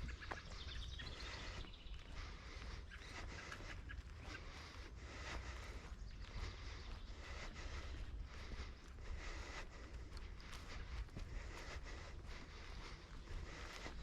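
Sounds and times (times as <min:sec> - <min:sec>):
small bird chirping: 0:00.0 - 0:04.5
footsteps on a trail: 0:00.0 - 0:14.0.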